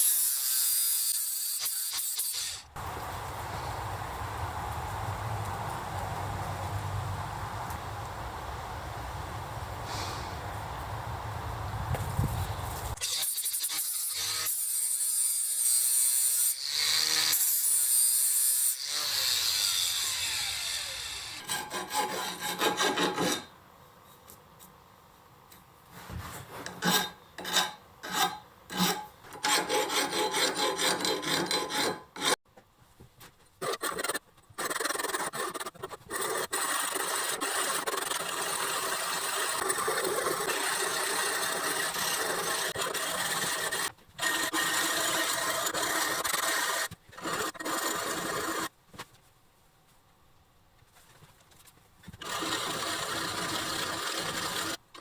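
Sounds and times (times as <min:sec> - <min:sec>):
scraping on steel axe head: 0:21.4 - 0:23.5, 0:26.6 - 0:32.4.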